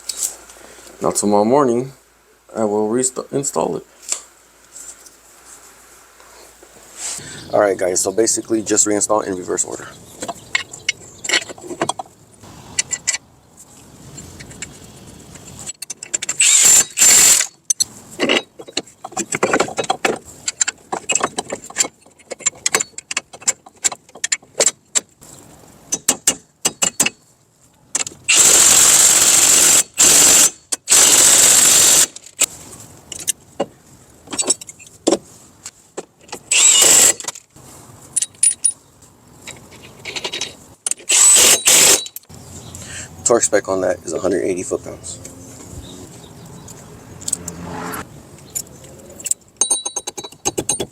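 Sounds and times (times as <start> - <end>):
metal tools clicking and clanking: 10.2 - 12.1, 15.4 - 25.1, 25.9 - 27.2, 34.3 - 35.0, 38.2 - 38.8, 39.4 - 42.3, 48.4 - 50.9.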